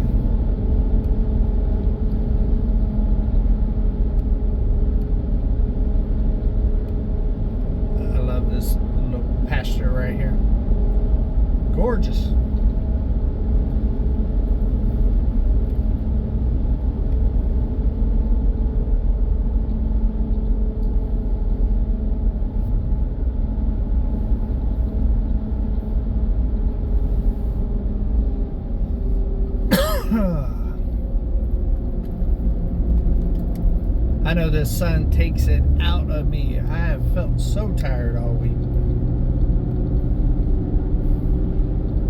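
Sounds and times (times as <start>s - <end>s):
truck engine and tyre rumble: 0.0s - 42.0s
person clearing throat: 29.7s - 30.8s.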